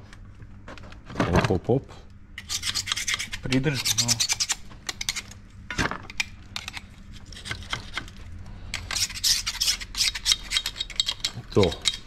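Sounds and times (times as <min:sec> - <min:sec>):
metal scraping strokes: 0:08.7 - 0:12.0.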